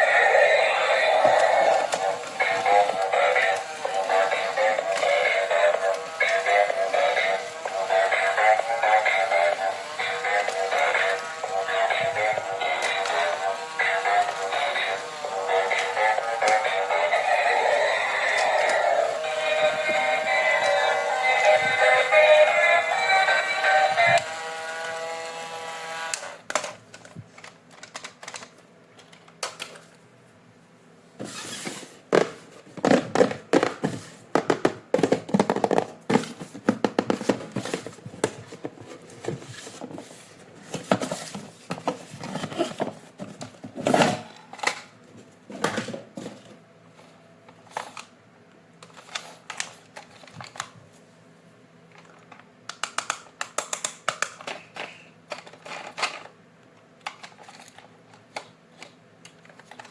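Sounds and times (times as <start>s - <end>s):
plastic toy parts clicking: 26.1s - 29.9s, 52.0s - 56.3s, 57.0s - 59.9s.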